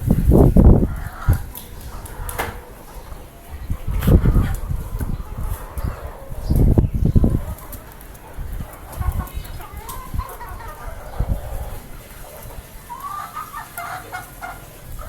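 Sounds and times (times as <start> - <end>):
chickens clucking: 0.0 - 15.0
low thumps: 2.2 - 3.0.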